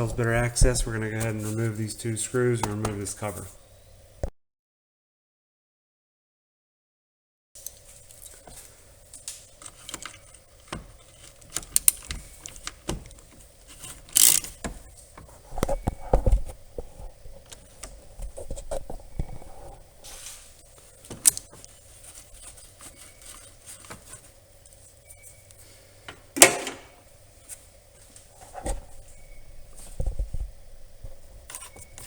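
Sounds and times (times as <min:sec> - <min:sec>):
tools clicking and scraping plastic: 0:09.6 - 0:14.9.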